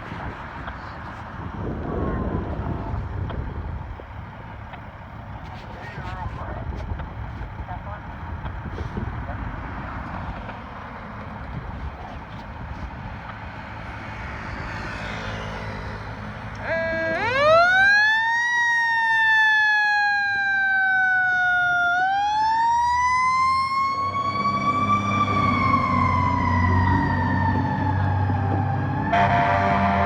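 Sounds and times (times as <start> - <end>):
truck engine rumble: 0.0 - 30.0
mechanical siren wailing: 14.3 - 30.0
air horn blast: 16.6 - 17.3, 29.1 - 30.0.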